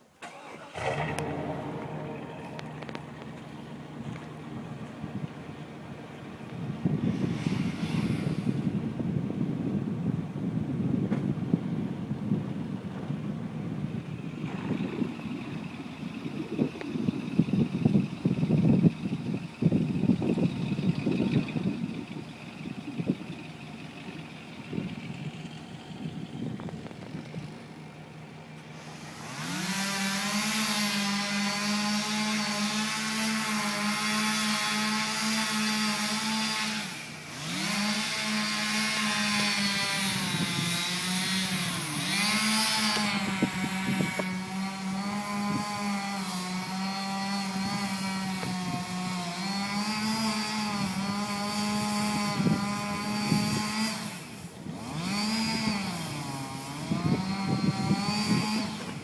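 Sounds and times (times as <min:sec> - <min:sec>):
chainsaw running at high revs: 0:00.8 - 0:05.2, 0:05.8 - 0:08.8, 0:28.7 - 0:59.0.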